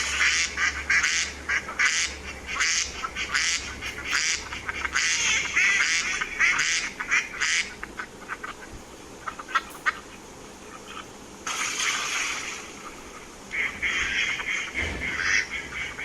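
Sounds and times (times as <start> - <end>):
ducks quacking: 0.0 - 16.0
rush of even noise: 2.2 - 16.0.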